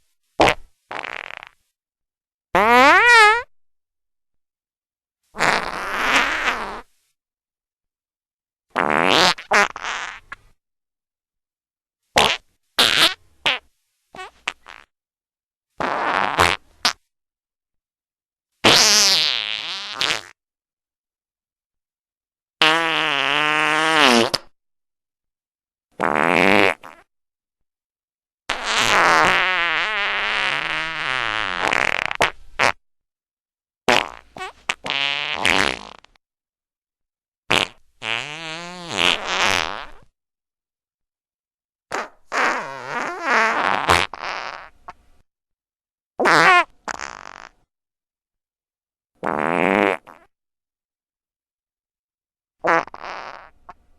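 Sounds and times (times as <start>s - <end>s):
fart sound effects: 0.4s - 1.6s, 2.6s - 3.5s, 5.4s - 6.9s, 8.8s - 10.4s, 12.2s - 13.6s, 14.2s - 14.9s, 15.8s - 17.0s, 18.6s - 20.4s, 22.6s - 24.6s, 26.0s - 27.1s, 28.5s - 32.8s, 33.9s - 36.2s, 37.5s - 40.1s, 41.9s - 44.8s, 46.2s - 47.6s, 49.2s - 50.3s, 52.6s - 53.6s.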